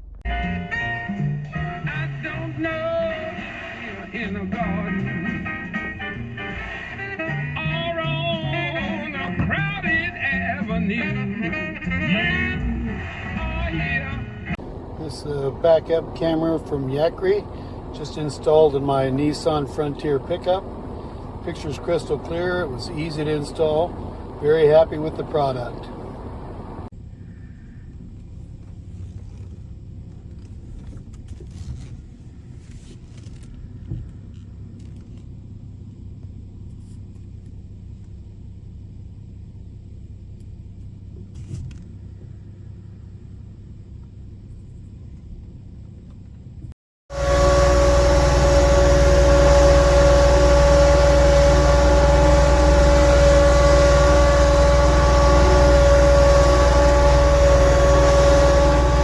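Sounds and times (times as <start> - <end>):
vehicle running with steady hum: 0.0 - 59.0
vehicle low rumble: 14.4 - 59.0.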